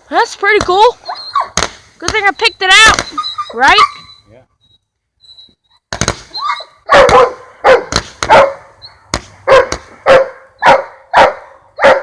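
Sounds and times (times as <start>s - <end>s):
dog barking: 6.4s - 8.7s, 9.4s - 12.0s.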